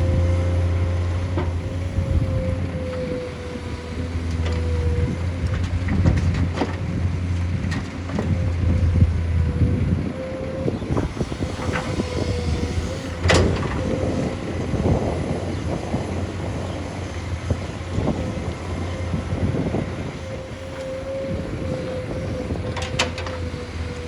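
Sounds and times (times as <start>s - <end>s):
heavy machine engine humming: 0.0s - 24.0s.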